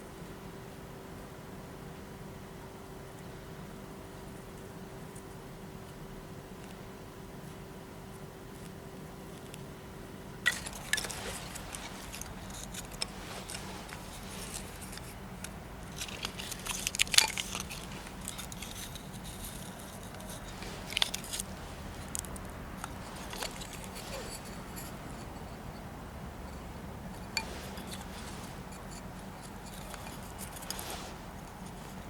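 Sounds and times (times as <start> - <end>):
faint low hum: 0.0 - 32.0
small objects clicking and clinking: 10.5 - 15.2, 15.8 - 25.3, 27.1 - 31.1.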